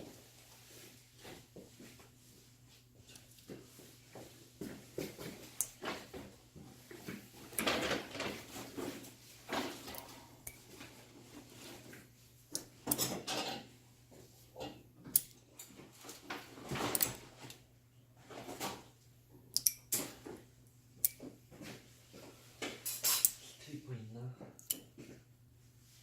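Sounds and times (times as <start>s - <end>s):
faint steady hum: 0.0s - 26.0s.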